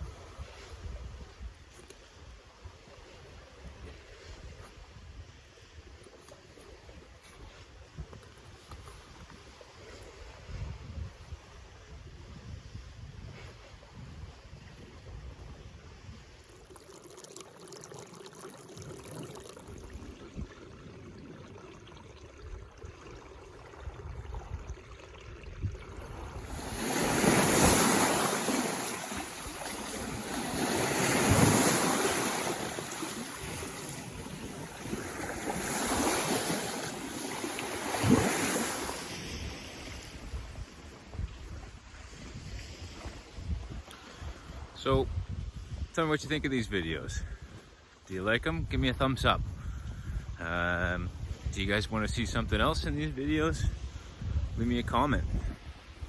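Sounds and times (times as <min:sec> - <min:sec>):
waves washing up on beach: 0:14.4 - 0:24.0, 0:25.8 - 0:44.8.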